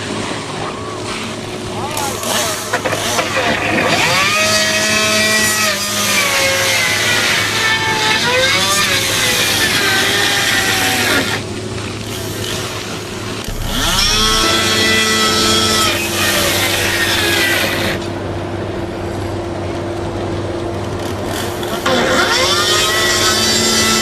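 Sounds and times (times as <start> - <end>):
power saw motor: 13.5 - 18.1, 21.3 - 24.0.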